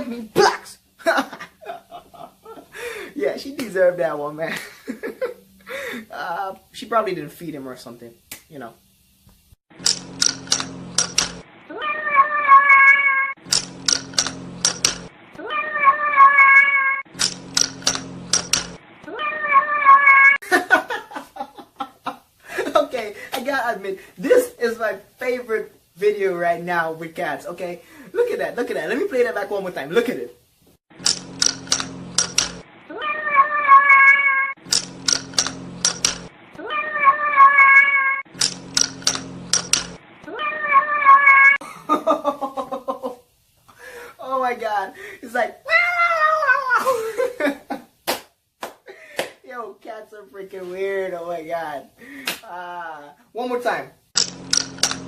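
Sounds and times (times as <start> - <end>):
sharp clicks: 9.8 - 11.4, 13.4 - 15.1, 17.1 - 18.8, 30.9 - 32.6, 34.6 - 36.3, 38.3 - 40.0, 54.2 - 55.0
cat meowing: 11.7 - 13.4, 15.4 - 17.0, 19.1 - 20.4, 32.9 - 34.6, 36.6 - 38.2, 40.3 - 41.6
sharp clicks or taps: 34.7 - 36.3.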